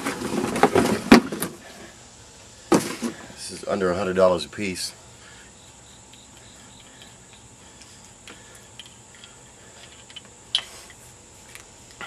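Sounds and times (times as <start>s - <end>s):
crickets chirring: 0.0s - 12.0s
light clicks and taps of tools: 6.1s - 12.0s.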